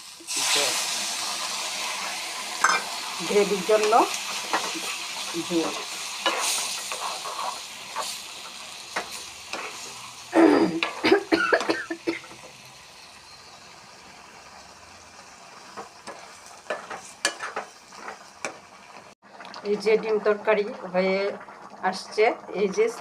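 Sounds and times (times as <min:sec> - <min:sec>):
curry sizzling in a pan: 0:00.0 - 0:23.0
spatula scraping a pan: 0:02.6 - 0:11.2, 0:15.6 - 0:18.6.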